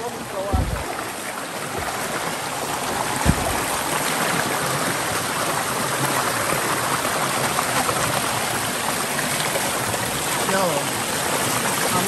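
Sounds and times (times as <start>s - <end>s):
stream water rushing: 0.0s - 12.0s
brief low thump: 0.5s - 0.9s, 3.2s - 3.8s.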